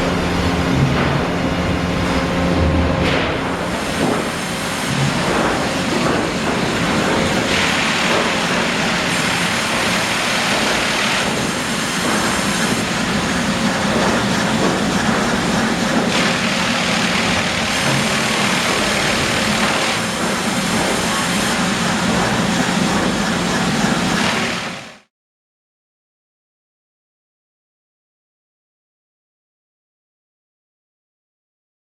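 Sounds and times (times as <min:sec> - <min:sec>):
machine drone: 0:00.0 - 0:25.1
band saw cutting logs: 0:03.3 - 0:24.8.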